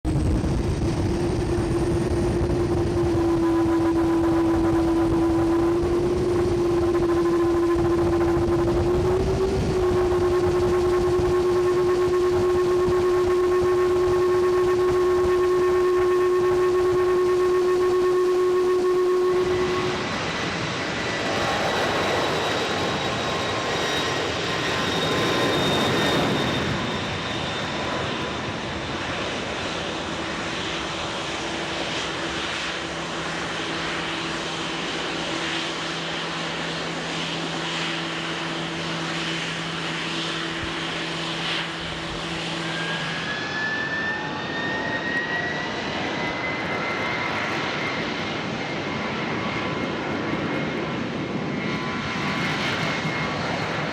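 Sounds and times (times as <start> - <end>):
high whine: 0.0 - 53.9
low steady hum: 0.1 - 21.9
jet engines rushing: 0.1 - 53.9.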